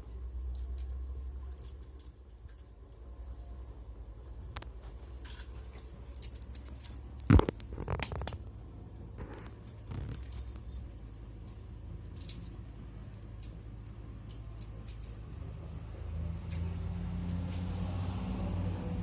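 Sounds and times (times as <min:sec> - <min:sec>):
low steady hum: 0:00.0 - 0:19.0
scrapes and clicks: 0:04.6 - 0:08.4.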